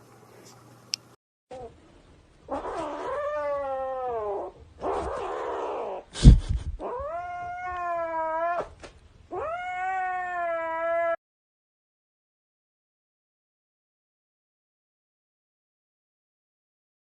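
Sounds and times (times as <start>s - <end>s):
cat yowling: 2.5s - 6.1s, 6.8s - 11.2s.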